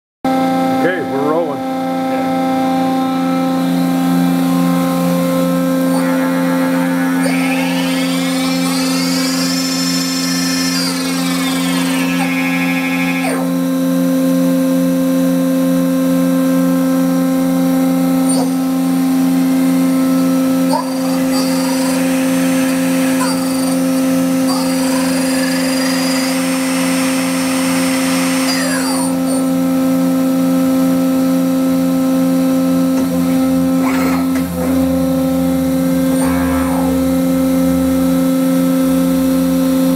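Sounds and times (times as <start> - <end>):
machine whine: 0.3 - 39.9
machine tool running: 3.5 - 30.9.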